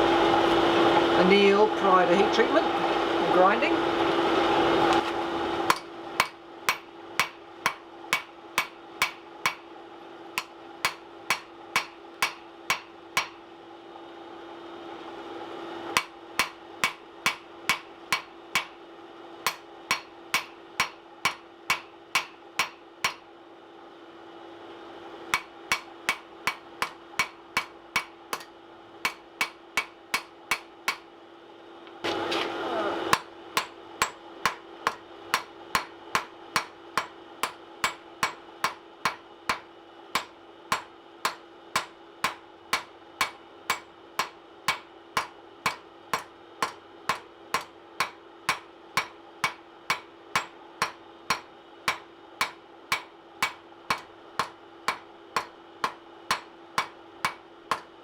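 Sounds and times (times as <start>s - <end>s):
steady hum: 0.0s - 58.0s
hammer striking steel on anvil: 5.7s - 9.7s, 10.3s - 13.4s, 15.9s - 18.8s, 19.4s - 23.3s, 25.3s - 31.1s, 32.1s - 58.0s.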